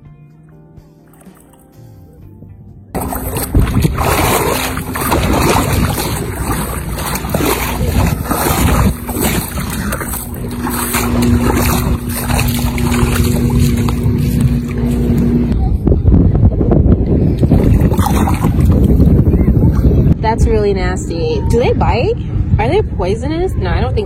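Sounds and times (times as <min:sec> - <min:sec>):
steady low hum: 0:02.8 - 0:24.0
wind buffeting microphone: 0:02.9 - 0:24.0
surf: 0:03.0 - 0:16.4, 0:17.2 - 0:20.8.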